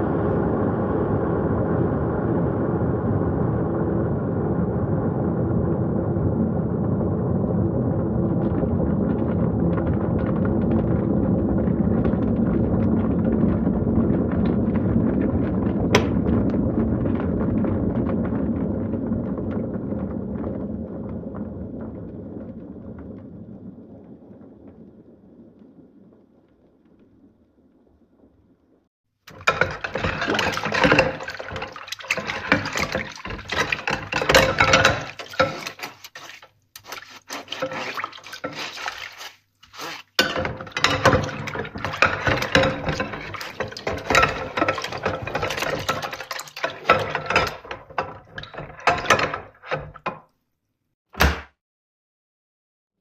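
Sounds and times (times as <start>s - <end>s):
water splashing in a sink: 6.8s - 25.6s, 29.3s - 50.4s.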